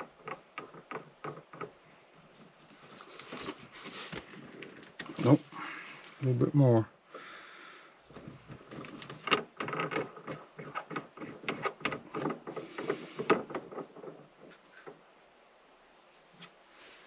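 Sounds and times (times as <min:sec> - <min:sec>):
gear shift knob clicks and rattles: 0:08.1 - 0:14.9.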